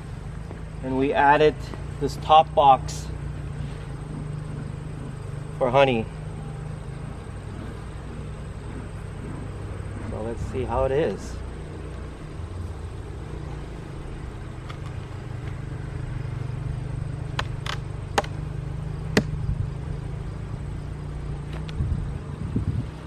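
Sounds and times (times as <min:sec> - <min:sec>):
honeybees humming: 0:00.0 - 0:23.0
hive boxes clicking and knocking: 0:00.4 - 0:12.2, 0:14.2 - 0:15.8, 0:17.1 - 0:19.4
hive boxes bumping: 0:01.7 - 0:13.6, 0:17.2 - 0:19.5.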